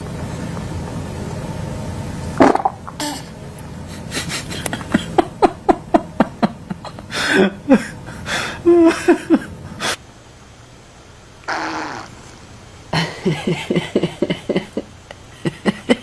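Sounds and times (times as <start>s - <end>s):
breathy giggling laughter: 3.9s - 10.0s, 13.0s - 16.0s.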